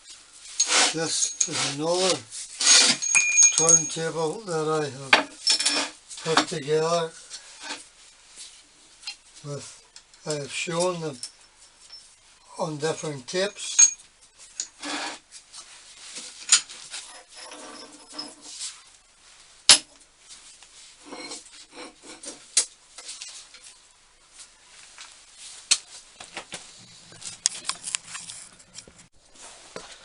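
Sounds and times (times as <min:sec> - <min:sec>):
metal scraping and rubbing: 0:00.4 - 0:04.6, 0:14.6 - 0:15.4, 0:16.0 - 0:18.8, 0:21.0 - 0:22.5
metal parts knocking and clinking: 0:02.6 - 0:04.1, 0:12.8 - 0:14.0.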